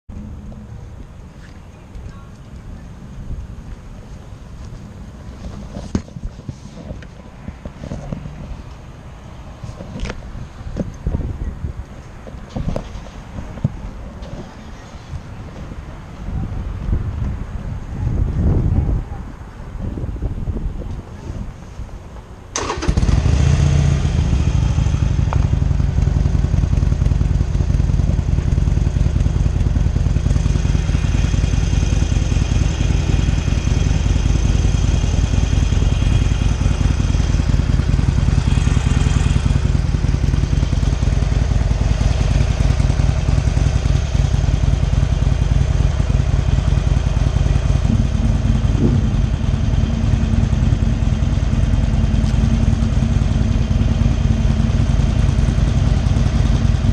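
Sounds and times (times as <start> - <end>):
motorcycle engine starting and idling: 22.5 - 56.9.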